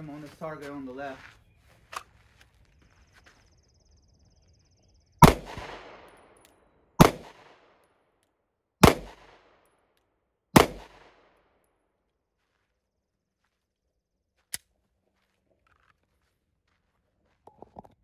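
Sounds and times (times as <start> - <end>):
pistol shots with echo: 5.2 - 6.4, 7.0 - 7.9, 8.8 - 9.7, 10.6 - 11.4.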